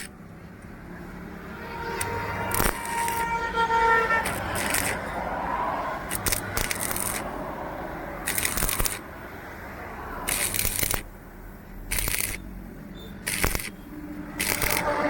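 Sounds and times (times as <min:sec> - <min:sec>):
scraping strokes: 0:01.9 - 0:07.3, 0:14.4 - 0:15.0.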